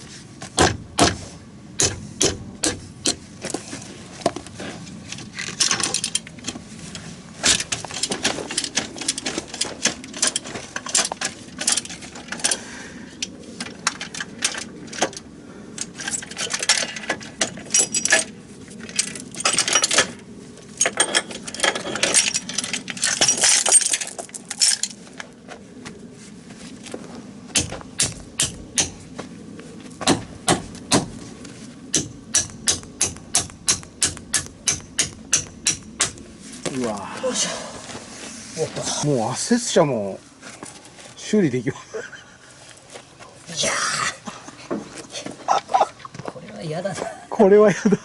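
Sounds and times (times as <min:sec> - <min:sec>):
metal tools clinking: 0:05.2 - 0:06.5, 0:15.8 - 0:20.2, 0:20.8 - 0:25.0.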